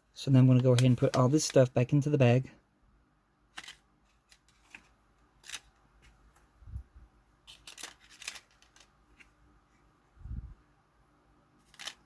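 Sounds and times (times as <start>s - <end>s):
plastic parts clicking: 3.5s - 5.8s, 7.5s - 9.0s, 11.6s - 12.0s.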